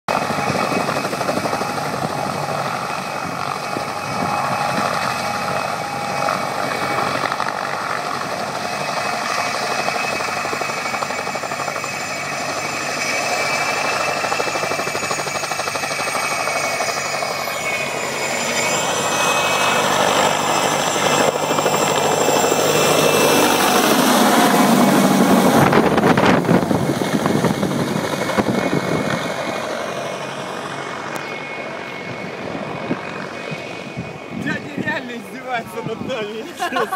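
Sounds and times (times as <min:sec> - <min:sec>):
helicopter engine and rotor: 0:00.1 - 0:36.9
high whine: 0:10.2 - 0:36.1.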